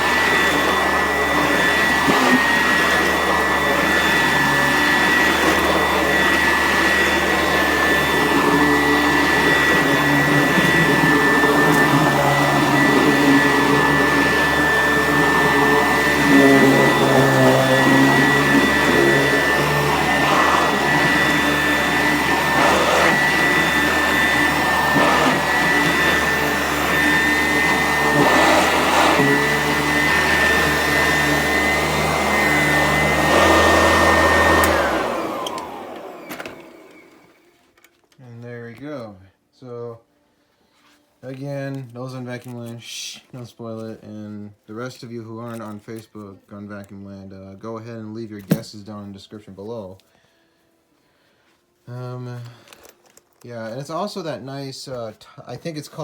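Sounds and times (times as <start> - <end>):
vacuum cleaner running: 0.0 - 37.5.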